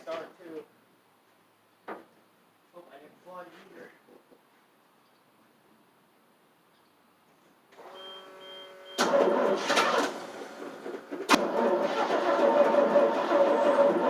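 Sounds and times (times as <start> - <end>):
engine starter cranking: 8.9 - 14.0.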